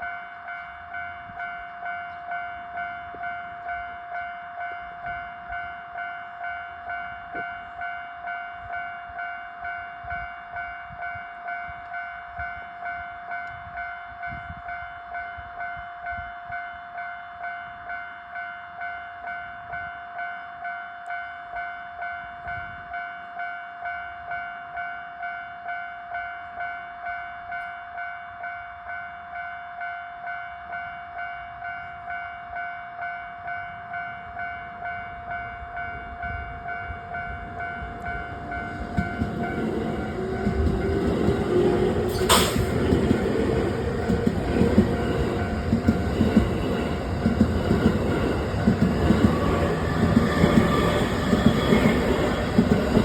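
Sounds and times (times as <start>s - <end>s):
crossing warning bell ringing: 0.0s - 53.0s.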